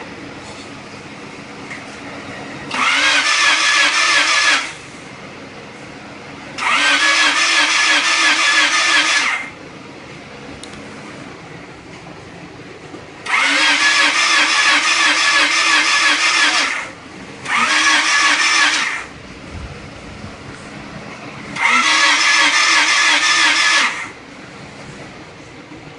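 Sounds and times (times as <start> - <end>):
tractor engine cranking: 2.7 - 4.9, 6.6 - 9.6, 13.2 - 19.1, 21.5 - 24.2.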